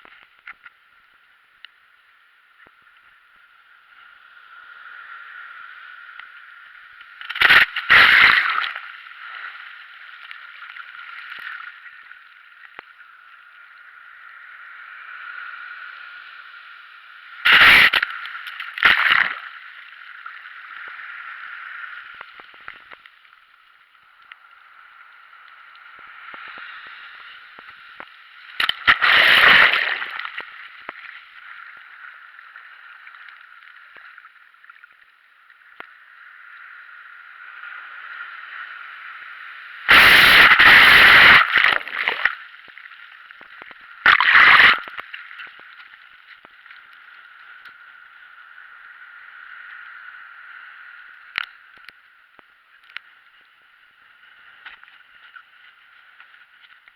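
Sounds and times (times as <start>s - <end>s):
loud sudden noise bursts: 39.9s - 42.3s.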